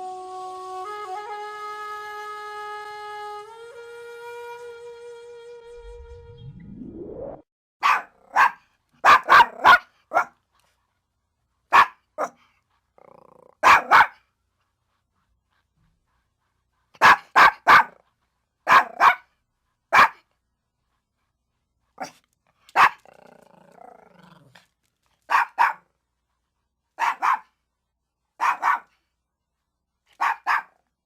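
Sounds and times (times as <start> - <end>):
small dog barking: 7.8 - 10.4, 11.7 - 12.4, 13.4 - 14.2, 17.0 - 18.0, 18.6 - 19.3, 19.9 - 20.3, 22.0 - 23.2, 25.3 - 25.9, 27.0 - 27.6, 28.4 - 29.0, 30.1 - 30.9
dog growling: 13.0 - 13.6, 23.0 - 24.7.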